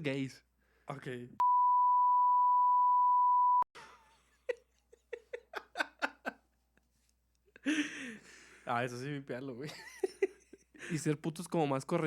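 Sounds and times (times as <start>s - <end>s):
censor bleep tone: 1.4s - 3.7s.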